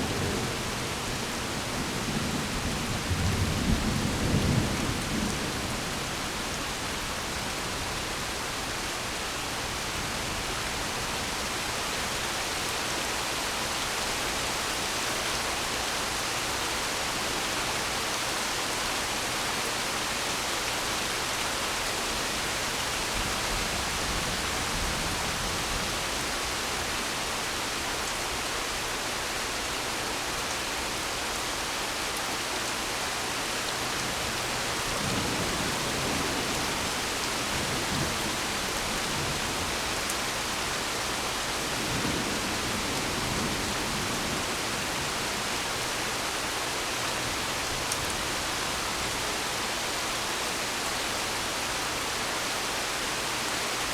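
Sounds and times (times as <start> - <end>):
low rumble of thunder: 0.0 - 6.8
heavy rain hissing: 0.0 - 53.9.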